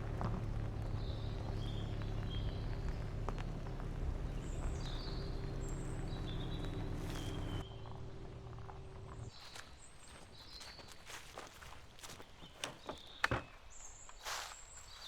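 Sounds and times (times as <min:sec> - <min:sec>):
birds chirping: 0:00.4 - 0:11.0.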